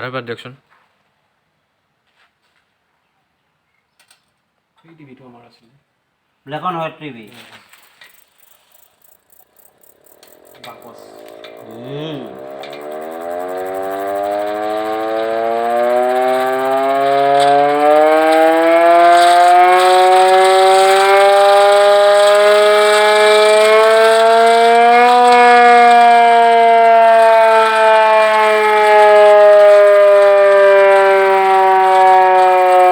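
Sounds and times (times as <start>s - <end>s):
air raid siren winding: 8.0s - 32.9s.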